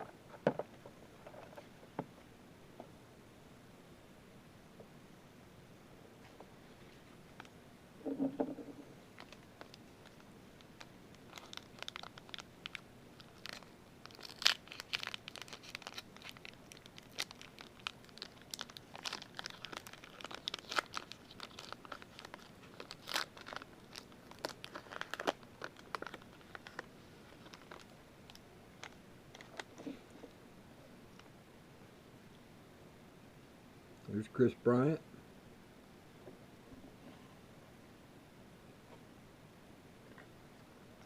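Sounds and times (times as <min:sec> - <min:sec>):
card pack wrappers tearing and crinkling: 0:09.2 - 0:27.9.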